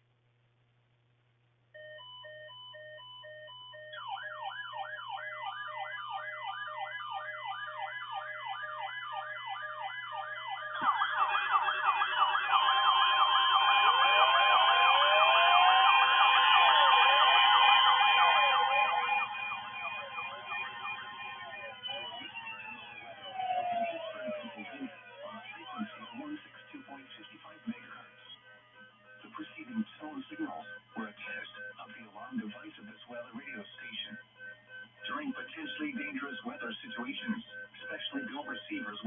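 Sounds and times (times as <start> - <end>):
siren yelps and sweeps: 1.8 - 29.1
steady electronic alarm tone: 1.8 - 39.0
steady electronic beeping tones: 1.8 - 39.0.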